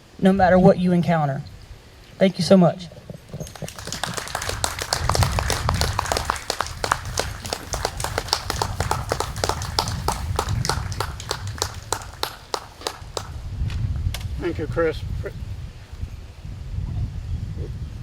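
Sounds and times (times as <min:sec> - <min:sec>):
crowd applauding: 0:03.4 - 0:13.4.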